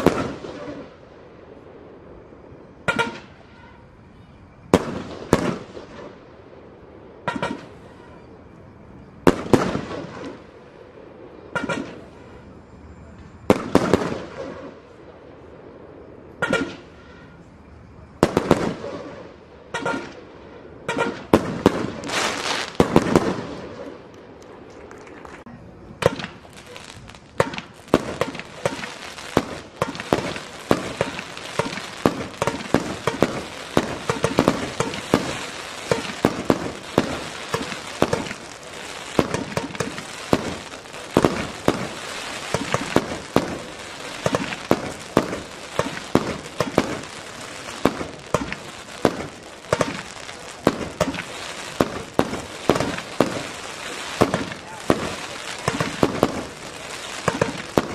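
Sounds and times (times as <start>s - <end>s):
rapid firework pops and crackling: 0.0s - 0.9s, 20.9s - 25.4s, 26.0s - 57.9s
firework bangs: 0.0s - 8.3s, 9.2s - 12.6s, 13.4s - 57.9s.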